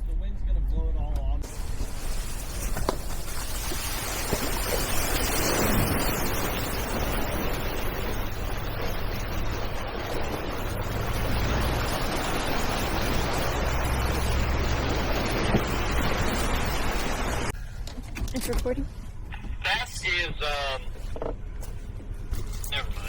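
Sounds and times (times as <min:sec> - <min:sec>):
vehicle engine droning: 0:00.0 - 0:17.9
wind on microphone: 0:01.4 - 0:17.5.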